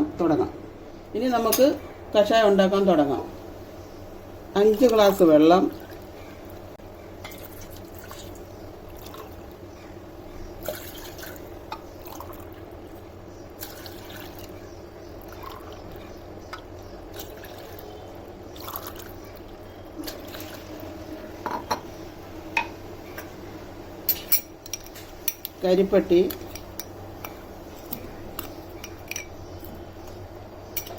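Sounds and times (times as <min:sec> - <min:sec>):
water pouring into pot: 0:18.5 - 0:19.2.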